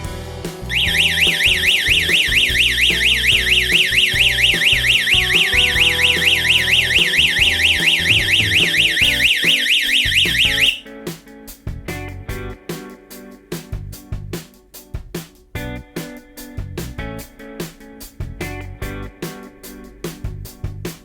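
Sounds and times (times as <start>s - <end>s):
security alarm siren: 0.7s - 10.8s.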